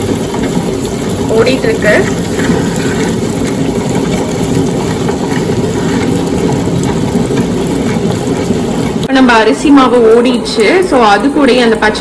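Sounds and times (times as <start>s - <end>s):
wet grinder humming: 0.0s - 9.1s.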